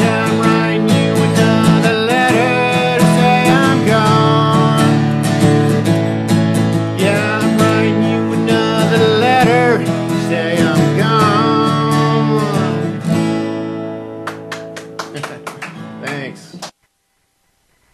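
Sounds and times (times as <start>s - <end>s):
bending lead guitar melody: 0.0s - 16.6s
acoustic guitar strumming: 0.0s - 16.7s.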